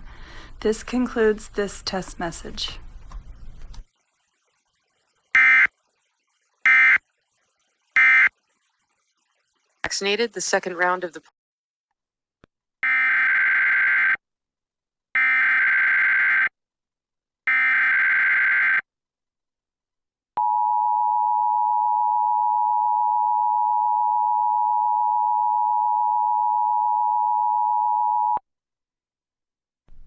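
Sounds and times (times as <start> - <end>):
warbling digital data tones: 2.1 - 10.3
two-tone attention signal: 5.3 - 5.8, 6.6 - 7.1, 8.0 - 8.4.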